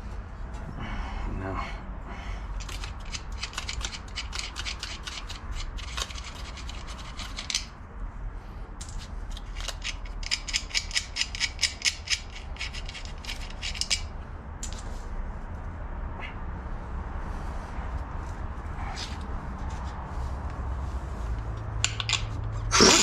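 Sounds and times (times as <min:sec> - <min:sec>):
ratchet wrench clicking: 0:02.6 - 0:07.7, 0:09.4 - 0:14.1.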